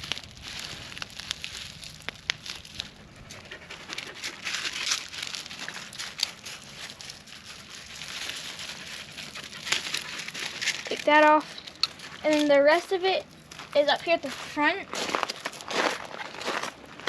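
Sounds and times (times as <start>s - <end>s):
plastic packaging crinkling: 0.0s - 3.0s, 4.3s - 12.6s.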